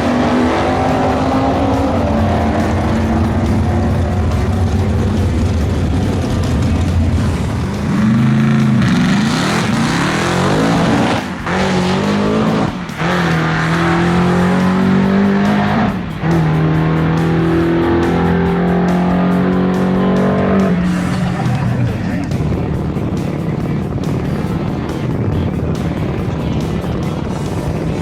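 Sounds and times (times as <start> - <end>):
drag racing car engine revving: 0.0 - 28.0.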